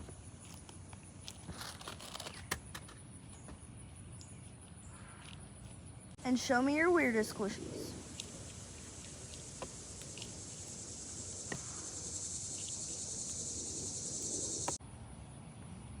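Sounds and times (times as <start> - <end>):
insect trilling: 6.2 - 14.8.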